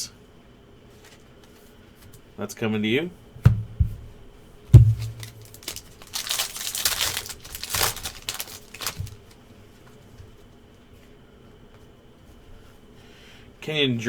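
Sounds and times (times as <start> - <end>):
knock: 3.5 - 4.1, 4.8 - 5.2
wrapper tearing and crinkling: 4.8 - 9.4.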